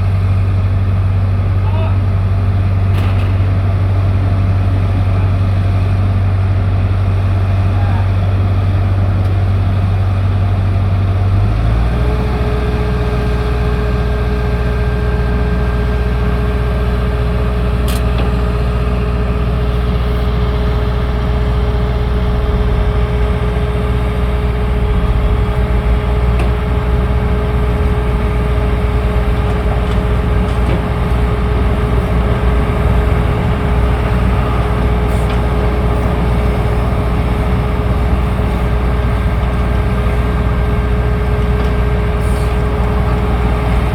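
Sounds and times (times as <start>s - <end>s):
large engine idling: 0.0s - 43.9s
steady whining tone: 12.2s - 43.9s.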